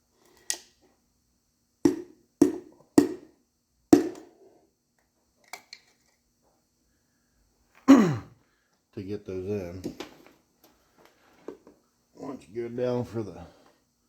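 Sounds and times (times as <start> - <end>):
piston tapped into cylinder knocks: 1.8 - 3.3, 4.0 - 4.3.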